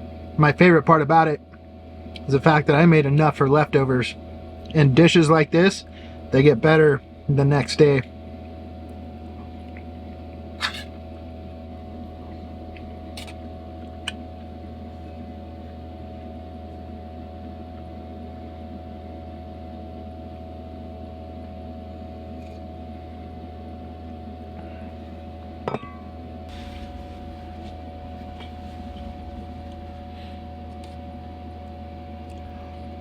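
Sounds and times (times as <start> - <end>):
steady mechanical hum: 0.0 - 33.0
faint steady tones: 25.8 - 33.0.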